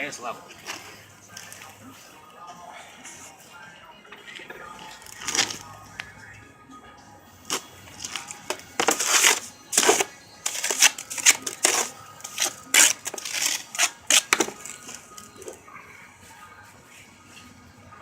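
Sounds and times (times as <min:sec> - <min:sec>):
trowel and stones scraping: 0:07.5 - 0:15.6.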